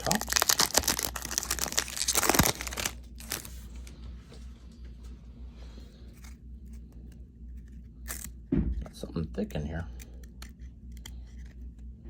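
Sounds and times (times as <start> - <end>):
wrapper tearing and crinkling: 0.0 - 3.6
rustling and handling: 0.0 - 12.0.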